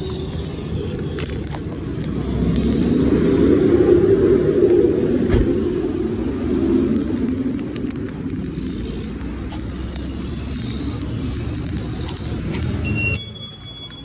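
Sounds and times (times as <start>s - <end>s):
high electronic beeps: 12.8s - 14.0s.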